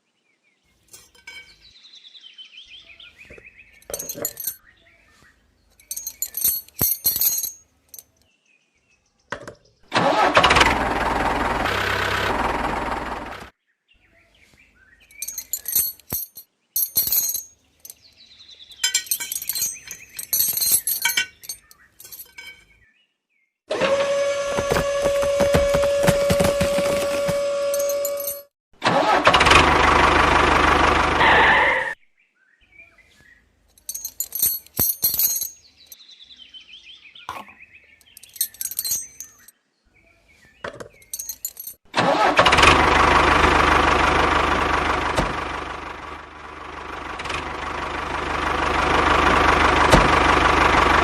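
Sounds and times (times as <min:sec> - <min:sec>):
small parts clicking and clinking: 0:00.9 - 0:01.6, 0:03.3 - 0:04.6, 0:05.7 - 0:08.3, 0:15.1 - 0:18.1, 0:18.7 - 0:22.7, 0:24.5 - 0:28.5, 0:33.7 - 0:36.0, 0:38.0 - 0:39.5, 0:40.8 - 0:41.8.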